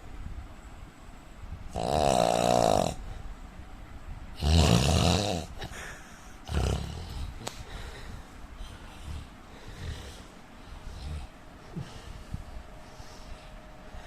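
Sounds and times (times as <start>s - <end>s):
man snoring: 1.7s - 3.1s, 4.4s - 5.8s, 6.4s - 7.4s, 9.0s - 10.3s.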